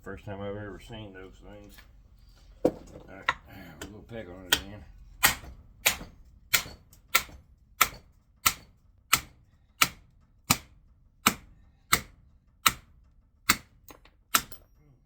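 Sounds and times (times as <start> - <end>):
hammer striking metal: 3.8 - 12.9, 13.5 - 14.7.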